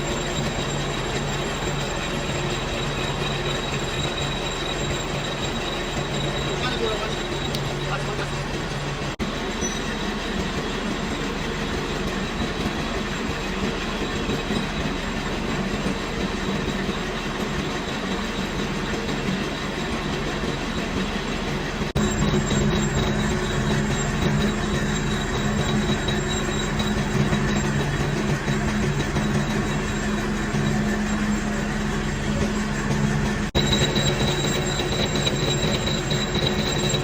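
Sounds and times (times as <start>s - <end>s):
metal lathe machining: 0.0s - 37.0s.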